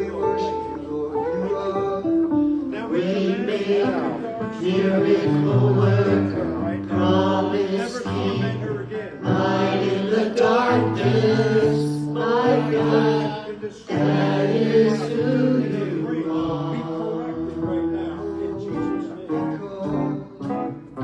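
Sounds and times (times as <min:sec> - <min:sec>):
held keyboard notes: 0:00.0 - 0:21.0
voices singing together: 0:00.0 - 0:21.0
bass notes: 0:04.7 - 0:21.0.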